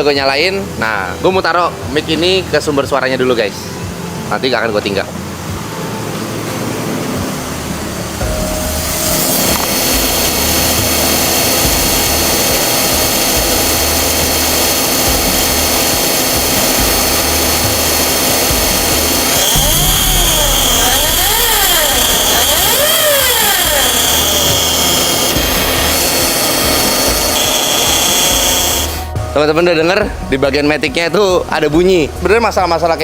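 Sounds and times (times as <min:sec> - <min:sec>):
transmission mechanical drone: 0:01.8 - 0:30.4
rising and falling whine: 0:05.2 - 0:29.2.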